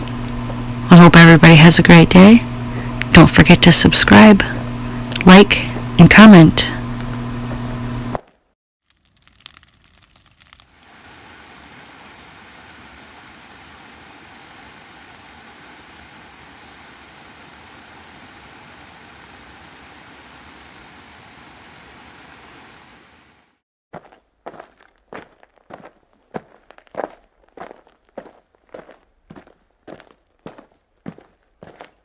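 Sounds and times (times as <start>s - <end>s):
clicks and rustles: 8.9s - 10.9s
waterfall rushing: 10.9s - 23.4s.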